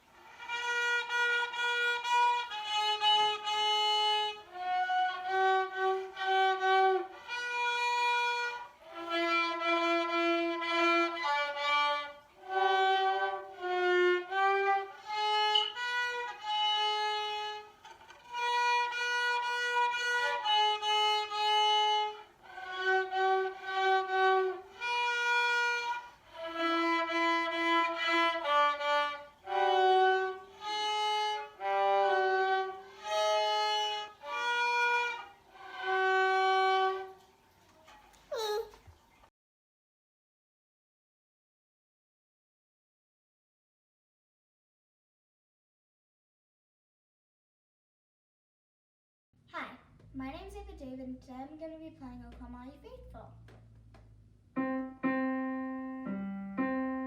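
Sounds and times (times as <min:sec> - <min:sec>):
solo violin slow melody: 0:00.0 - 0:37.3.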